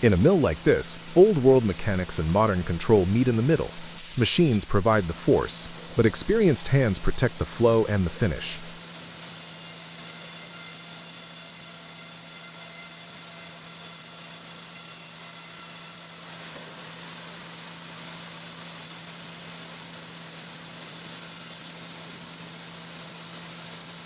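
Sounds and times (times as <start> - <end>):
sawmill machinery humming: 0.0 - 17.0.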